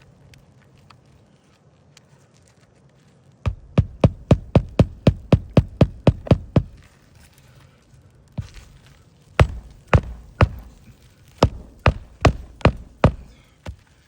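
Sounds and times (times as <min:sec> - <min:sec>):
hammer striking nail into shingle: 0:03.5 - 0:06.9, 0:09.4 - 0:13.9.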